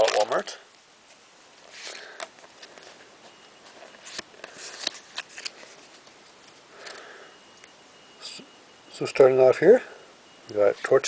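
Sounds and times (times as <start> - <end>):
foil wrapper crinkling: 0.0 - 0.5
cards being handled: 1.0 - 7.0.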